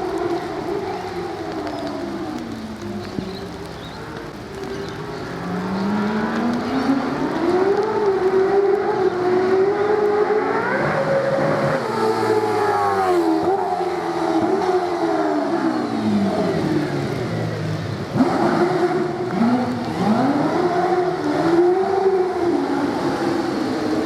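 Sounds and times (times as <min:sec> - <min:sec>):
race car engine accelerating: 0:18.1 - 0:24.0.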